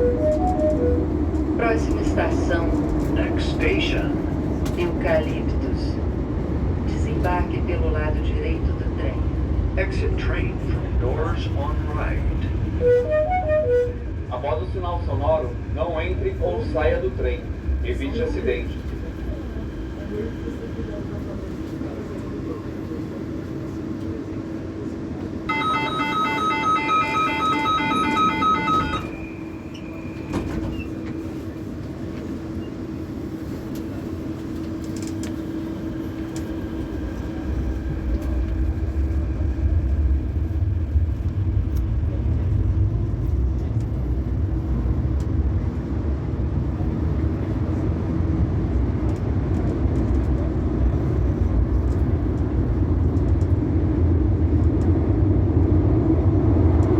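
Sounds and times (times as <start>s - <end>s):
train rumble: 0.0s - 56.9s
pulsed electronic beeping: 25.5s - 29.4s.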